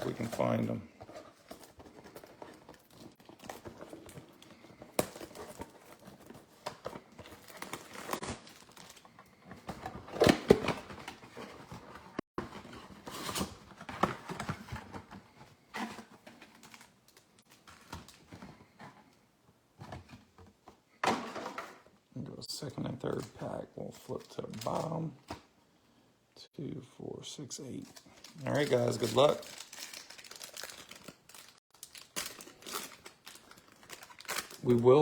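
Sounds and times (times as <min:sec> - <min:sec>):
foil wrappers crinkling and tearing: 0:00.0 - 0:10.9, 0:27.7 - 0:35.0.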